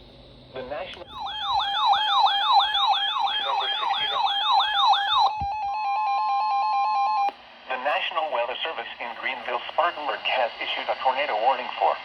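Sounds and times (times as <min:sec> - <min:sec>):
warbling siren-like alert tone: 0:01.1 - 0:07.3.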